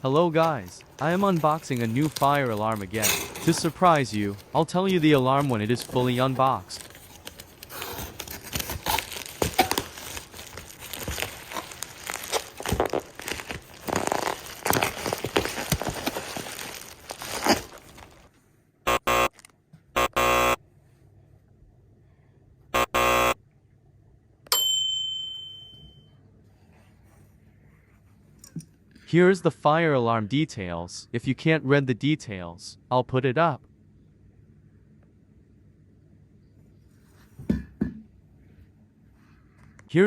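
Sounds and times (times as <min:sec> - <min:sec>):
packaging crinkling and tearing: 0:00.1 - 0:18.3
loud buzzing beeps: 0:18.9 - 0:19.3, 0:20.0 - 0:20.6, 0:22.8 - 0:23.4.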